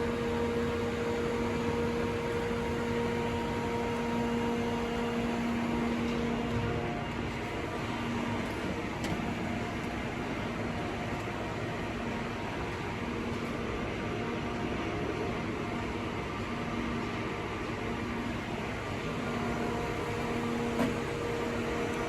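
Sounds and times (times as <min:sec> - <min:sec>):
low electrical hum: 0:00.0 - 0:22.0.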